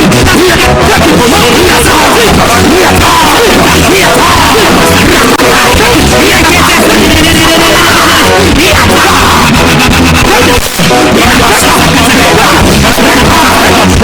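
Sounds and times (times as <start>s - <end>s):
voices shouting and praying: 0.2s - 14.0s.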